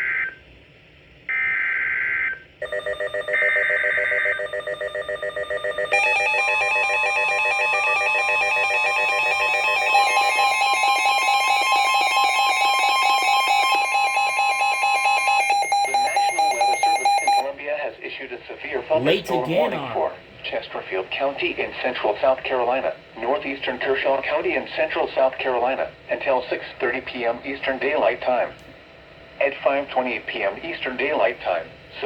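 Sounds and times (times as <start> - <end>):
rapidly pulsing electronic alarm: 2.6 - 17.5.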